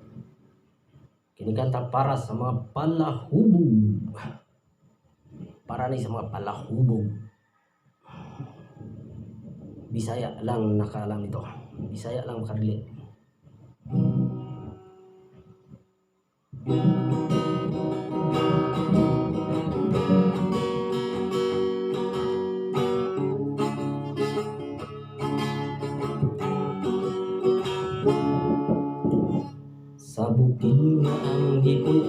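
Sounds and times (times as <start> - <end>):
acoustic guitar strumming: 13.9 - 15.2, 16.6 - 32.0.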